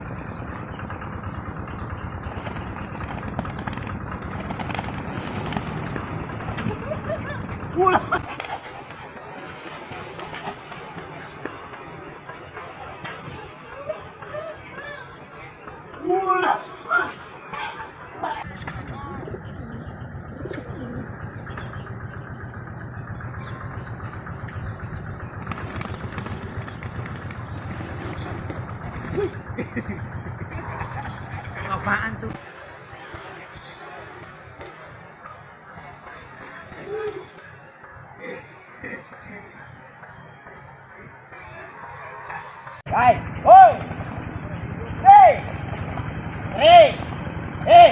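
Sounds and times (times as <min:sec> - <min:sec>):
low engine hum: 0:00.0 - 0:47.9
pigeon wings flapping: 0:02.2 - 0:07.4, 0:08.1 - 0:12.0, 0:25.4 - 0:29.8, 0:32.3 - 0:37.7, 0:43.6 - 0:44.4, 0:45.1 - 0:47.4.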